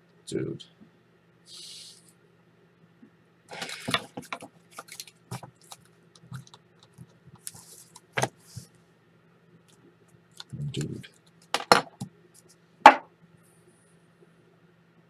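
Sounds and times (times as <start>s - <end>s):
faint electrical hum: 0.0s - 15.0s
plastic wrappers crinkling: 3.5s - 6.6s.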